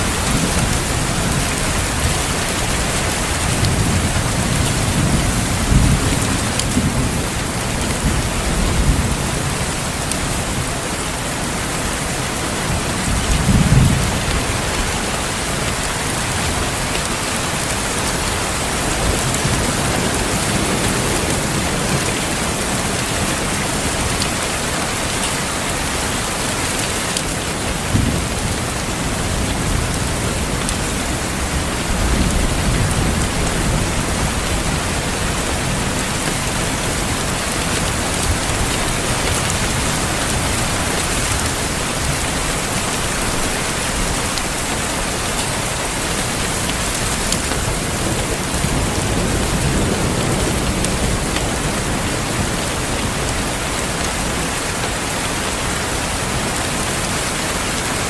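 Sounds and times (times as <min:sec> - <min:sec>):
thunder rumbling: 0:00.0 - 0:55.1
steady rain: 0:00.0 - 0:58.0.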